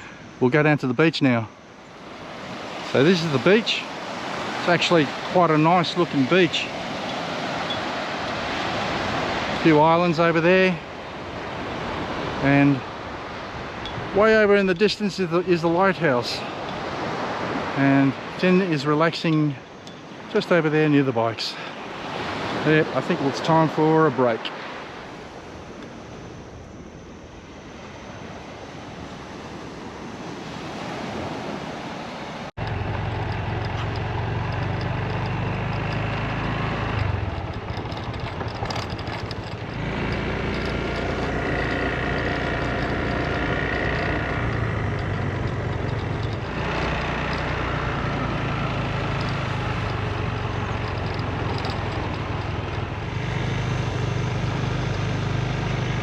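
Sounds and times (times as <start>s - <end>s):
motor scooter engine running: 32.6s - 56.0s.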